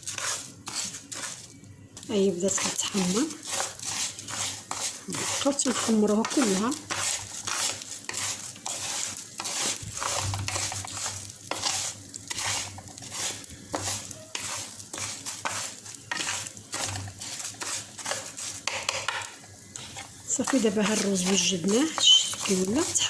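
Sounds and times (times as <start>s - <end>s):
rice sizzling in oil: 0.0s - 23.0s
spoon scraping pan: 0.0s - 23.0s.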